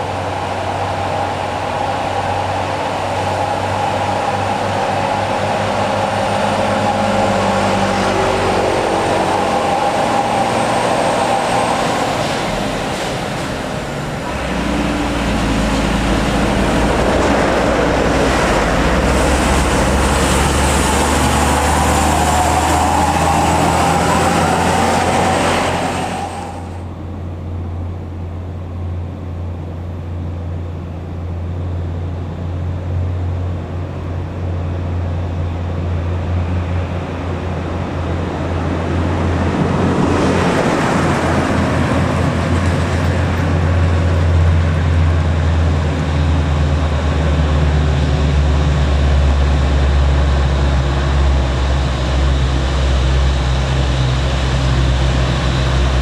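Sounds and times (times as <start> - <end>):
truck diesel engines straining: 0.0 - 29.0, 31.6 - 56.0
truck passing: 0.0 - 56.0.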